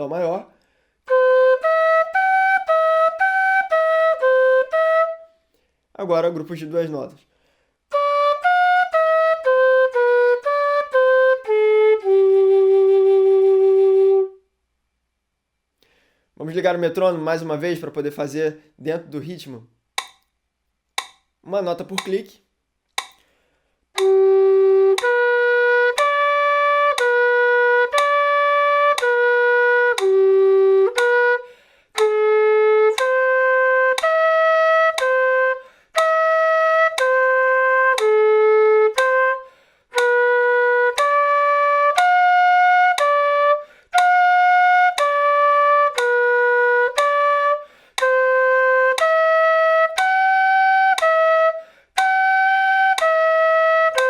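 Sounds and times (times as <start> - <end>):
notched flute playing: 1.1 - 5.5, 7.9 - 14.5, 24.0 - 54.0
metronome clicking: 20.0 - 22.3, 22.9 - 23.3, 24.0 - 31.4, 32.0 - 54.0.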